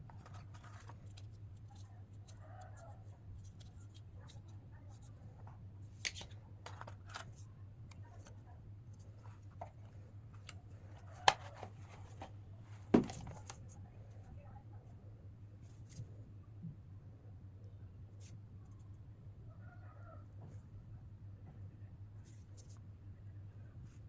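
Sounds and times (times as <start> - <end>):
phone packaging clicks and rustles: 0.0 - 1.8, 6.0 - 8.3, 9.3 - 13.7
steady low hum: 0.0 - 24.0.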